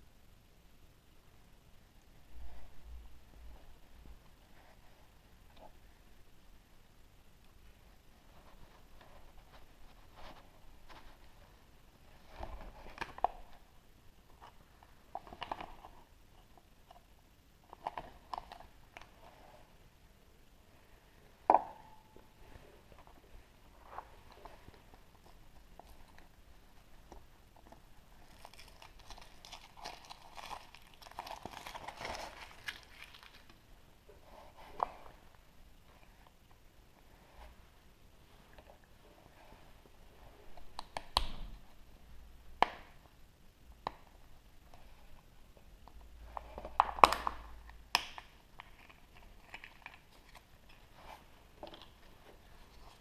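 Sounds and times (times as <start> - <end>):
foil wrapper crinkling: 28.2 - 33.5.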